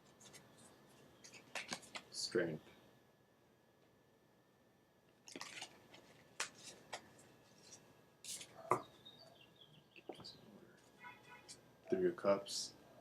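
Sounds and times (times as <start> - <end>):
cards tapping and rustling: 1.2 - 2.1, 5.3 - 8.9.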